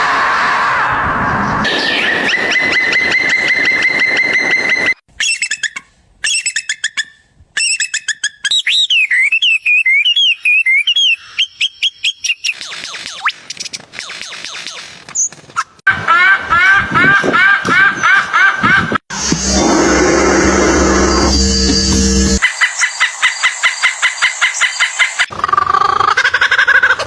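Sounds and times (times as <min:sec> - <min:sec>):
bird chirps and warbling whistles: 0:01.6 - 0:14.8, 0:22.4 - 0:25.3
bird trilling: 0:01.7 - 0:15.3, 0:19.6 - 0:26.3.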